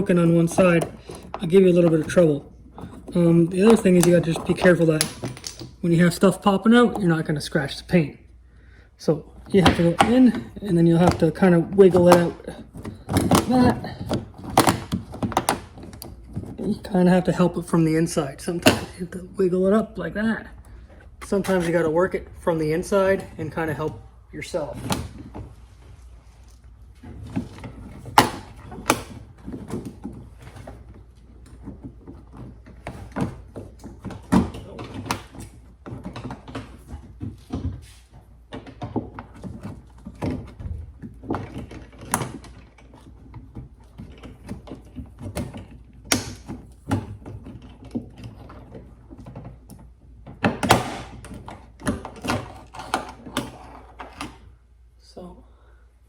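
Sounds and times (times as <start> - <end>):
door handle clicking and rattling: 11.0 - 16.6.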